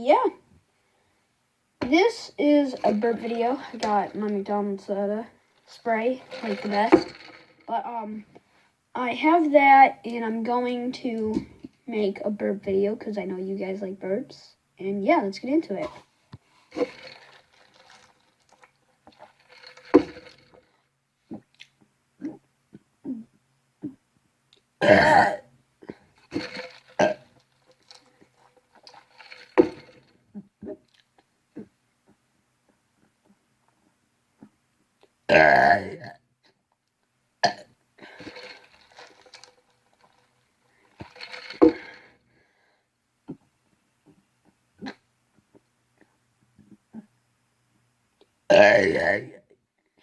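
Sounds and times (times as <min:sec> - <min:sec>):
gulping soda: 0:06.2 - 0:07.5, 0:16.7 - 0:20.6, 0:24.8 - 0:30.0, 0:37.4 - 0:42.2
quiet throaty noises: 0:15.5 - 0:50.0
loud burp: 0:24.8 - 0:25.5, 0:26.3 - 0:27.3, 0:35.3 - 0:36.2, 0:37.4 - 0:38.6, 0:48.5 - 0:49.4.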